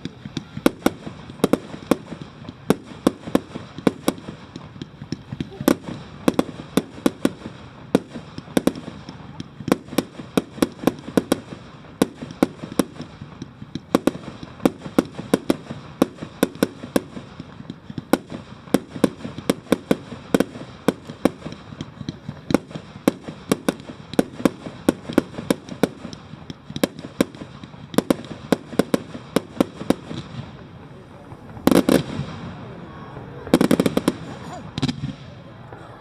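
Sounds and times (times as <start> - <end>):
fireworks bangs: 0.0 - 36.0.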